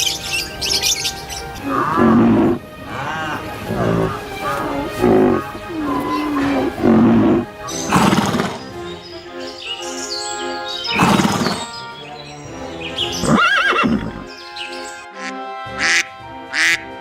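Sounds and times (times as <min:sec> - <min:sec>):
background music: 0:00.0 - 0:17.0
horse neighing: 0:01.6 - 0:08.7, 0:10.9 - 0:11.7, 0:13.2 - 0:14.3.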